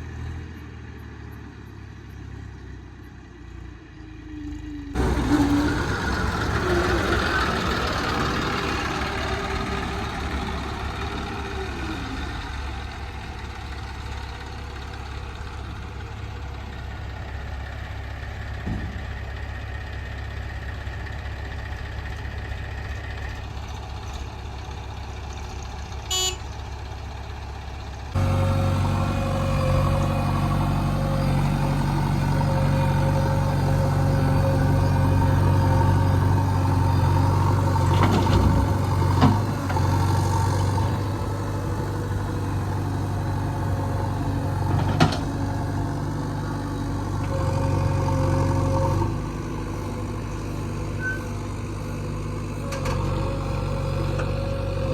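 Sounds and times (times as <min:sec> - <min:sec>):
deep engine running steadily: 0:00.0 - 0:54.9
diesel engines running: 0:00.0 - 0:54.9.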